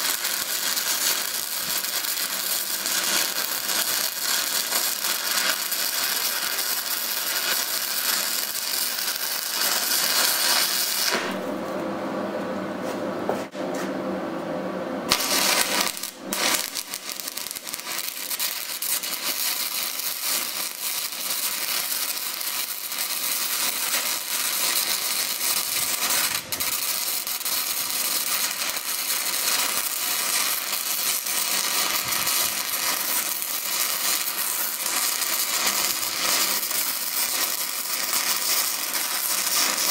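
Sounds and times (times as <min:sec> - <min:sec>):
welding arc crackling: 0:00.0 - 0:11.5, 0:15.1 - 0:39.9.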